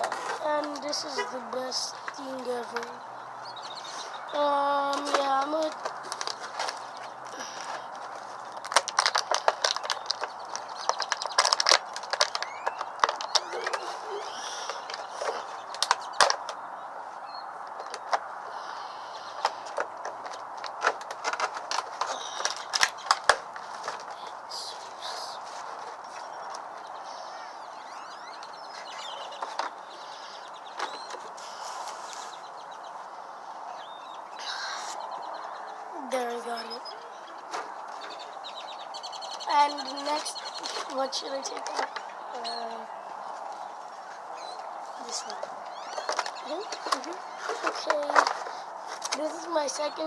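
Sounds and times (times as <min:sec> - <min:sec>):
birds chirping: 0:00.0 - 0:50.0
plastic packaging clicks and crackles: 0:04.9 - 0:13.8, 0:14.8 - 0:16.6, 0:19.4 - 0:24.3
plastic packaging clicks: 0:08.5 - 0:13.8.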